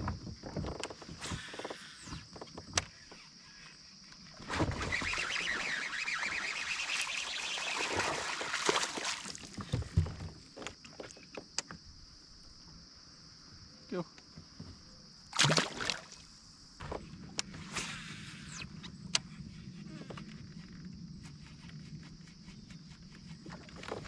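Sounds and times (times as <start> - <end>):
insects droning: 0.0 - 24.0
water sloshing against kayak: 4.4 - 11.5.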